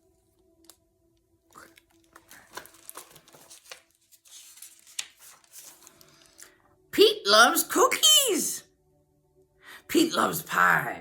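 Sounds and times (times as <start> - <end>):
paper pages rustling: 1.5 - 6.5.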